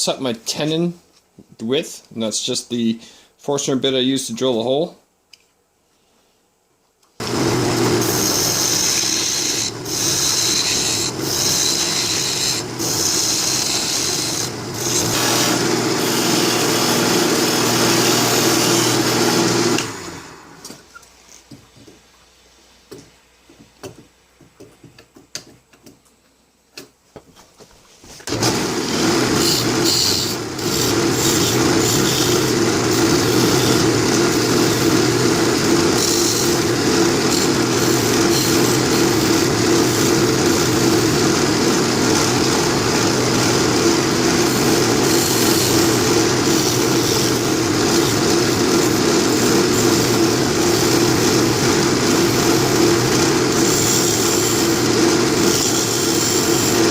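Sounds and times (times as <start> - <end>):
wood lathe running: 7.2 - 20.6, 28.3 - 56.9.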